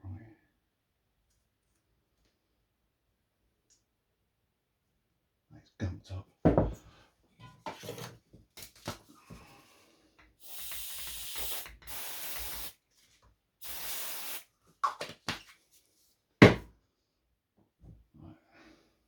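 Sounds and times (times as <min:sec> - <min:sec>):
aerosol spray can hissing: 0:10.4 - 0:12.8, 0:13.6 - 0:14.5.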